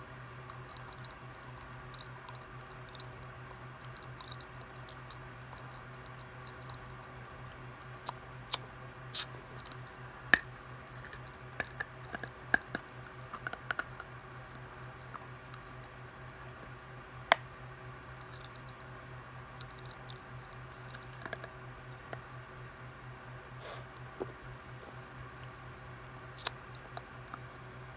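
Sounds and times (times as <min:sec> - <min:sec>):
steady low hum: 0:00.0 - 0:27.9.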